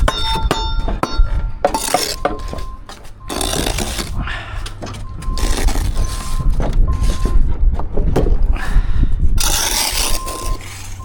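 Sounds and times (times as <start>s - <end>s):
short metallic rings: 0.0s - 4.0s
trowel scraping mortar: 1.6s - 7.4s, 9.4s - 11.0s.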